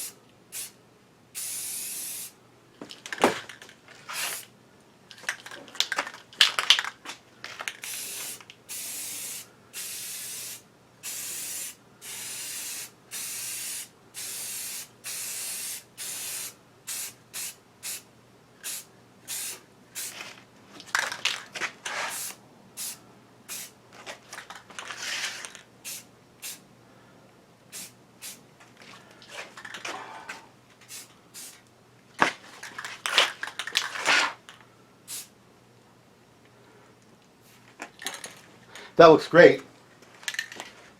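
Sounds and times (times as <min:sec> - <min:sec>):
spray paint hissing bursts: 0:00.0 - 0:00.8, 0:01.4 - 0:02.4, 0:04.2 - 0:04.5, 0:07.8 - 0:20.2, 0:22.0 - 0:23.8, 0:25.8 - 0:26.6, 0:27.7 - 0:28.4, 0:30.9 - 0:31.6, 0:35.1 - 0:35.3.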